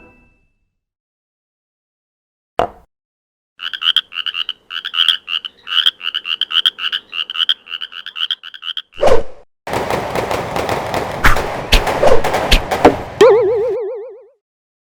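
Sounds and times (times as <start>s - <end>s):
frog croaking: 3.6s - 9.0s.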